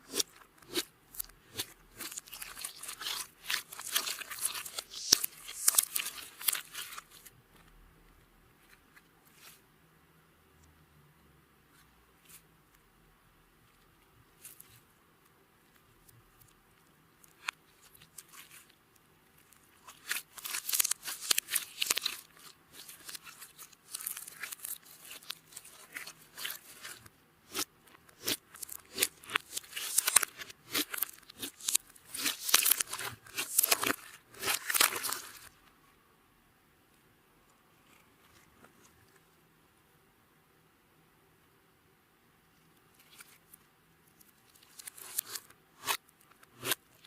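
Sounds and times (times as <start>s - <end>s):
slime squished by hand: 0.1s - 7.3s, 19.8s - 35.5s.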